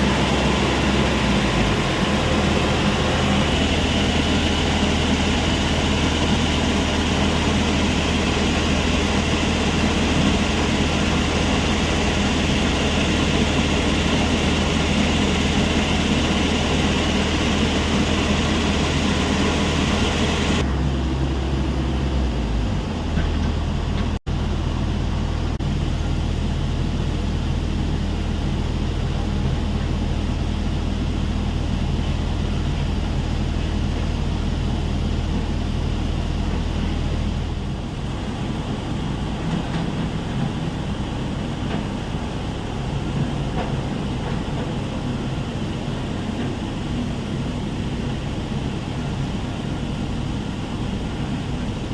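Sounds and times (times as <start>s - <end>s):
broad rushing noise: 0.0s - 23.1s
diesel machinery engine hum: 0.0s - 51.9s.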